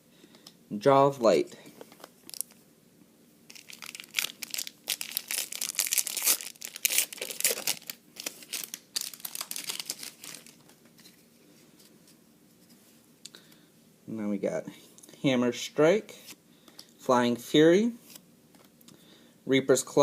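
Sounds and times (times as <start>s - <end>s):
wrapper tearing and crinkling: 2.2s - 2.6s, 3.5s - 10.7s.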